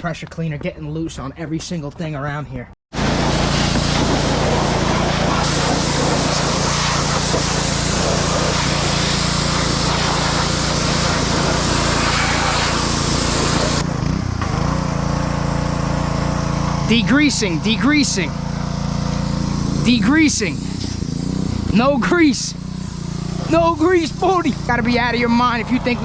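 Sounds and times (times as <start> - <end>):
water spray hissing: 3.0 - 13.9, 16.0 - 26.0
small engine humming: 3.0 - 26.0.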